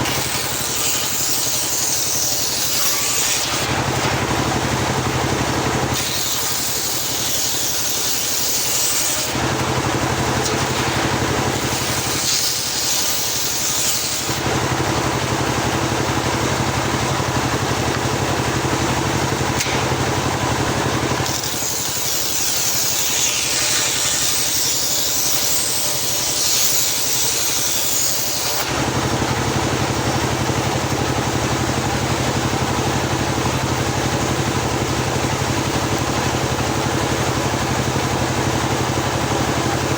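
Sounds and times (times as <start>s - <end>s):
circular sawmill running: 0.0s - 39.9s
high-pitched saw blade whine: 0.0s - 39.9s.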